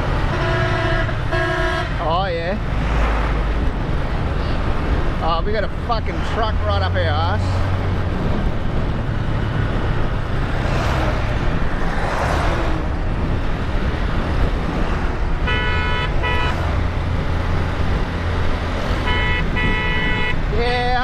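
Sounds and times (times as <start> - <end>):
road and wind noise: 0.0 - 21.0
traffic noise: 0.0 - 21.0
vehicle horn honking: 0.3 - 2.0, 15.4 - 16.7, 19.0 - 20.5.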